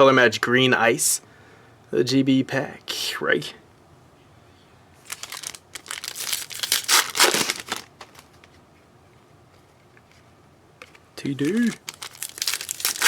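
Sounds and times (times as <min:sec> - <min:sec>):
foil pack tearing and crinkling: 0:05.0 - 0:08.3, 0:11.4 - 0:13.0.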